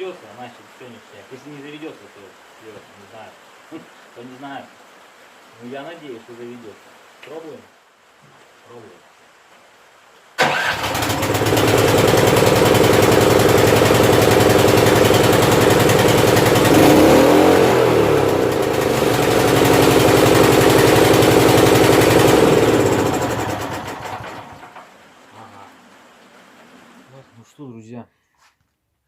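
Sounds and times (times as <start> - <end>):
petrol engine running at high revs: 10.4 - 24.7.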